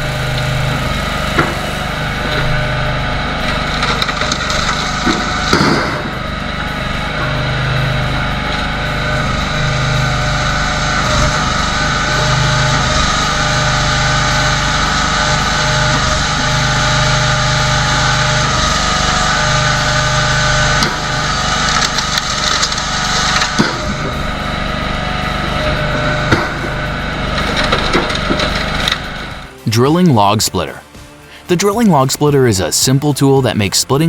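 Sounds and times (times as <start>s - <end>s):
log splitter engine running: 0.0s - 34.0s
wood knocking and cracking: 3.8s - 6.2s, 20.6s - 24.2s.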